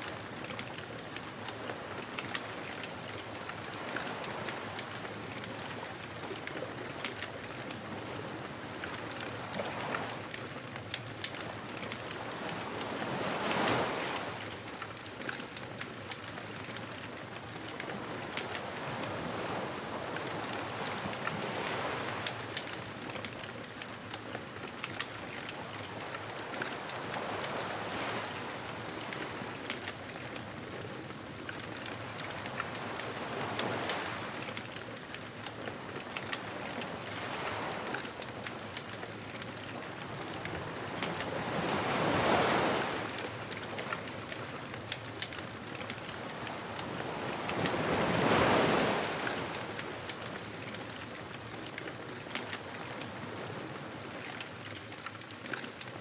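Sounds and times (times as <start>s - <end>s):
waves washing: 12.2s - 14.8s, 32.0s - 34.4s, 40.0s - 53.7s
wood fire crackling: 43.5s - 52.5s.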